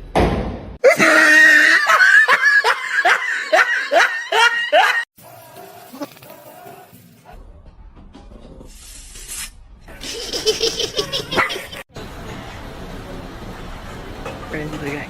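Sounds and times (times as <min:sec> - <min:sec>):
person laughing high-pitched: 0:00.8 - 0:05.1.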